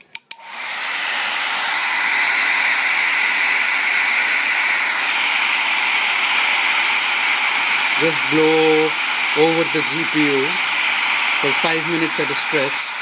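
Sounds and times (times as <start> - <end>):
hair dryer switch clicks: 0.0 - 0.5
hair dryer blowing with whine: 0.4 - 13.0.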